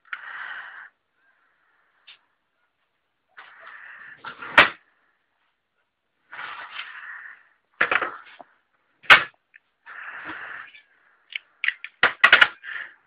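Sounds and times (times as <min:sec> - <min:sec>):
revolver action scraping: 0:06.3 - 0:08.6.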